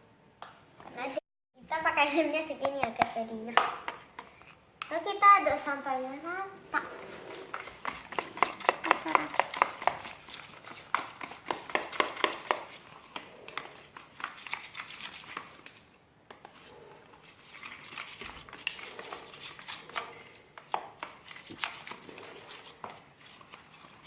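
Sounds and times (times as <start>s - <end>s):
spoon scraping container: 6.6s - 15.8s, 16.5s - 20.3s
spoon stirring glue: 6.7s - 24.0s.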